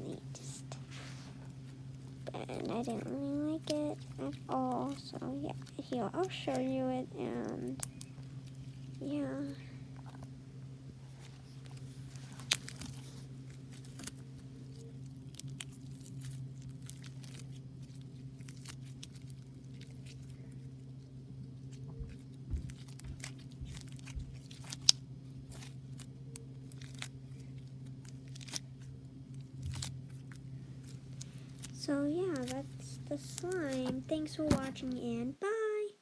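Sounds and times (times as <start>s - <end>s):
steady low hum: 0.0s - 36.0s
slime crackling and clicking: 1.9s - 10.3s, 21.7s - 35.0s.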